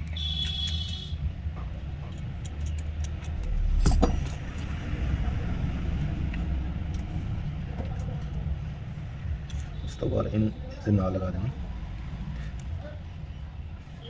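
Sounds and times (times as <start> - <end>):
low background rumble: 0.5 - 9.8.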